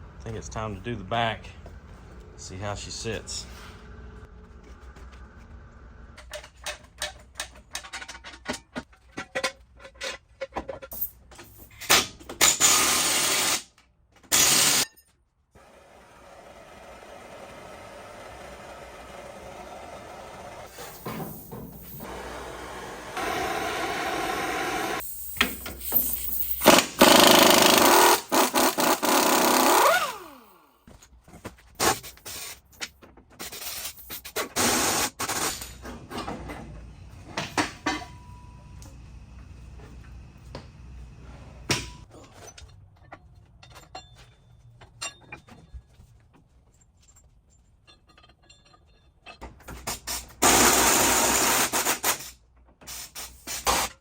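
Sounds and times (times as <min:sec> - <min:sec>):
hand tools clicking and knocking: 0:06.2 - 0:12.7, 0:25.4 - 0:36.7
power tool running: 0:15.6 - 0:20.7, 0:22.0 - 0:25.0, 0:26.6 - 0:30.7.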